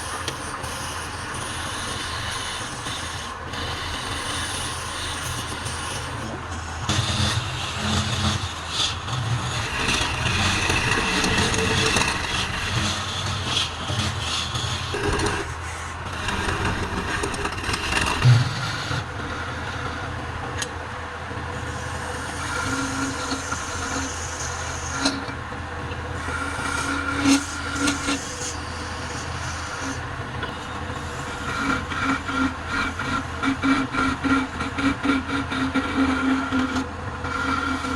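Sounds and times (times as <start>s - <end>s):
wood lathe motor hum: 0.0s - 37.9s
turning tool scraping wood: 3.7s - 19.4s, 26.1s - 37.9s.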